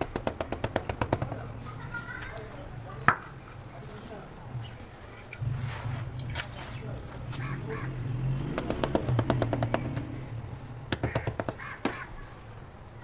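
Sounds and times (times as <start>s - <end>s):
taps and crackles on blocks: 0.0s - 3.6s, 10.9s - 12.0s
bird calling: 7.3s - 8.0s, 11.0s - 12.4s.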